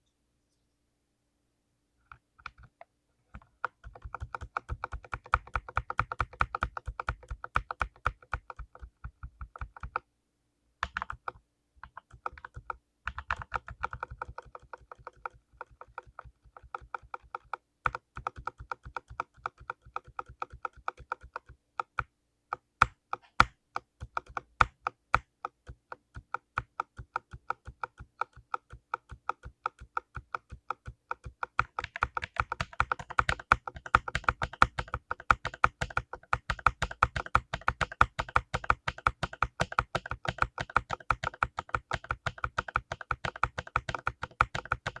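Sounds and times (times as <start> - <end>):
mechanical keyboard clicks: 3.6 - 10.0, 10.8 - 45.0.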